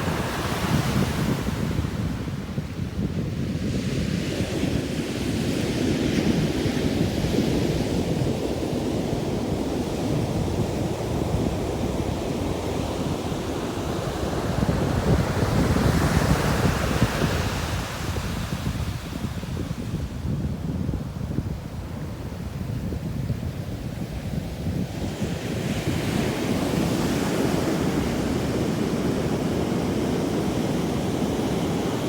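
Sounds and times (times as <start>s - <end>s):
wind rumble on microphone: 0.0s - 32.0s
waves breaking on beach: 25.5s - 32.0s.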